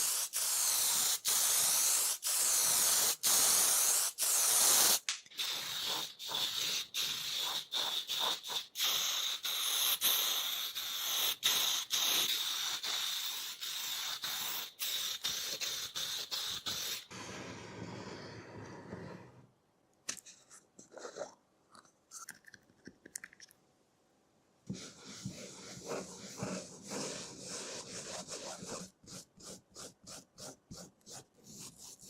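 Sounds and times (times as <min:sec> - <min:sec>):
aerosol spray can hissing: 0:00.0 - 0:17.1.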